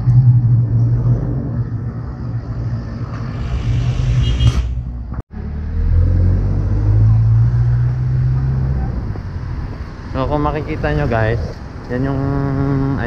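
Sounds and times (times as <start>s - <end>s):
road traffic rumble: 0.0s - 13.0s.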